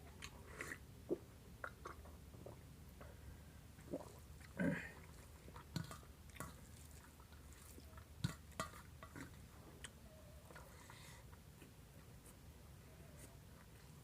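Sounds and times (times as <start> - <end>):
person chewing with wet smacks: 4.4 - 10.7.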